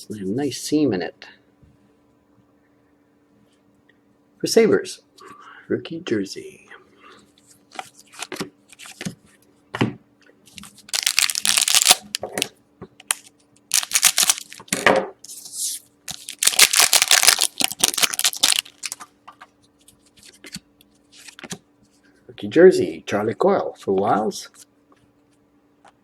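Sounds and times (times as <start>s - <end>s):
card pack wrappers ripping: 10.7s - 14.8s, 16.1s - 19.0s
wrapper crackling: 10.7s - 14.8s, 16.1s - 19.1s.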